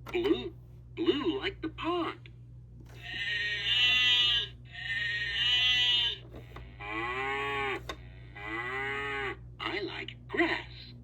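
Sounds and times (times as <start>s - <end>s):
recorded cow moos from toy speaker: 3.0s - 9.8s.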